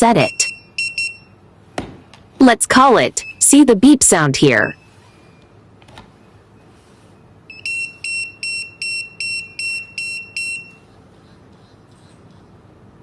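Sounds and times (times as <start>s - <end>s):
pager beeping: 0.0s - 1.3s, 7.5s - 10.8s.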